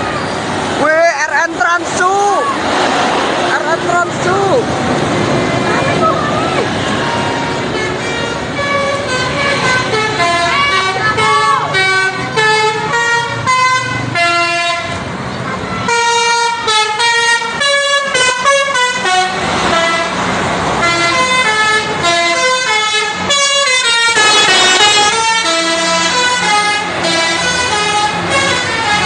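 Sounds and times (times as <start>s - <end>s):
rushing noise: 0.0s - 12.4s, 24.0s - 28.3s
musical air horn melody: 20.8s - 29.0s.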